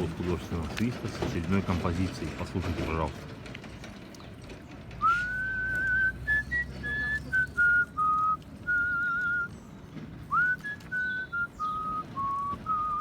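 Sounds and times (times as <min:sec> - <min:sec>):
person whistling a melody: 0:05.0 - 0:09.5, 0:10.3 - 0:13.0.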